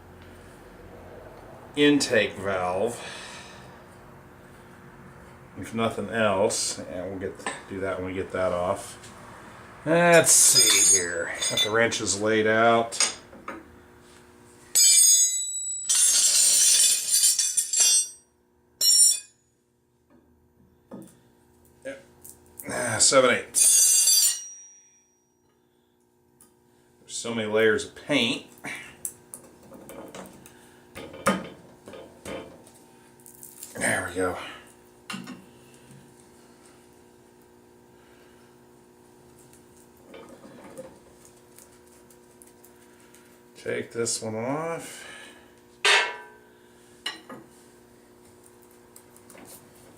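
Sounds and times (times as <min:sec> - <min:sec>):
steel wrenches clanking together: 0:10.2 - 0:12.0, 0:14.8 - 0:18.2, 0:18.8 - 0:19.3.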